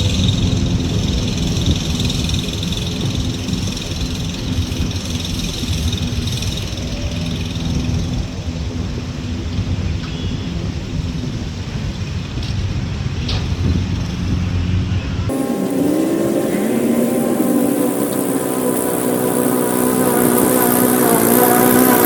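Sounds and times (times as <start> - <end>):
push mower engine running: 15.3 - 22.0.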